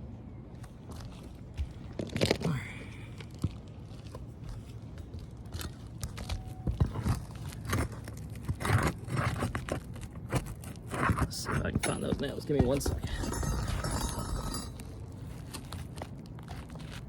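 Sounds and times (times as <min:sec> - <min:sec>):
pry bar scraping shingles: 0:05.4 - 0:17.0.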